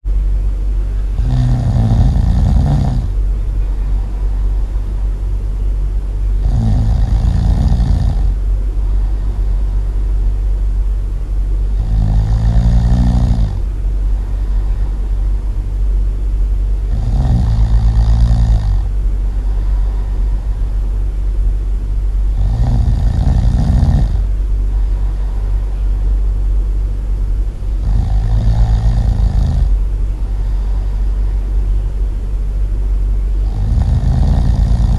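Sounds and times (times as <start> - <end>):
steady low rumble: 0.0 - 34.9
loud slow snoring: 1.1 - 3.2, 6.4 - 9.8, 11.7 - 15.2, 16.9 - 20.8, 22.3 - 25.8, 27.7 - 31.4, 33.4 - 34.9.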